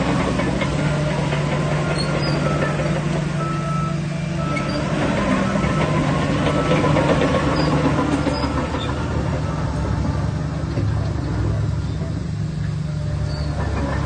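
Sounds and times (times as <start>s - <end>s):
heavy diesel bulldozer engine: 0.0s - 14.0s.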